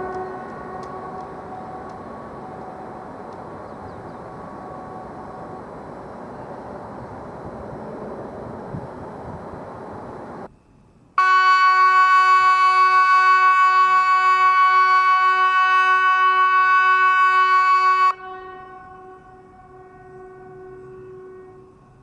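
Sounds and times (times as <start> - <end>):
electronic siren steady tone: 0.0 - 10.5.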